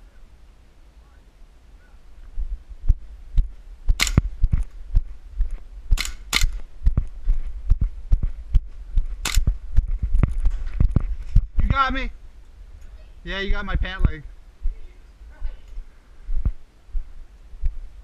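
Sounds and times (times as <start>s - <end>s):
thudding footsteps: 2.2s - 12.0s, 15.3s - 17.9s
airsoft pistol shots: 4.0s - 4.3s, 6.0s - 6.6s, 9.2s - 9.5s.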